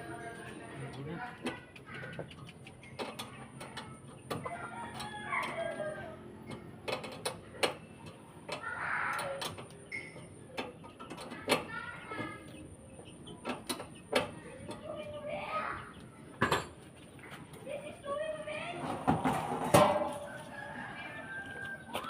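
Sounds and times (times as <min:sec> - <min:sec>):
chickens clucking: 0:00.0 - 0:22.0
sharp clicks and taps: 0:01.4 - 0:04.4
rooster-like crowing call: 0:04.5 - 0:06.2, 0:20.0 - 0:22.0.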